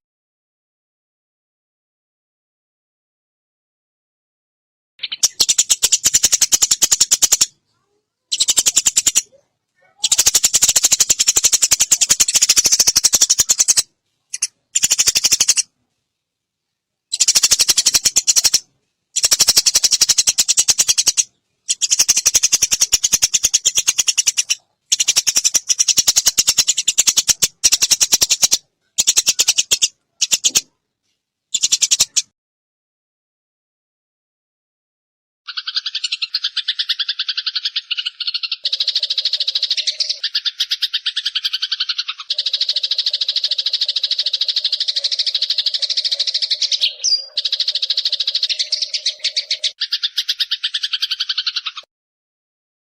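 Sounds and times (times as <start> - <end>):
sparrow rattling chatter calls: 5.0 - 7.6, 8.3 - 15.7, 17.1 - 30.7, 31.5 - 32.3, 35.5 - 51.9.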